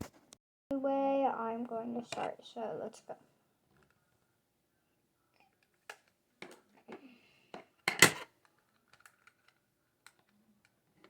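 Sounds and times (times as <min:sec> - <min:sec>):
plastic packaging clicking and rattling: 0:07.9 - 0:10.8.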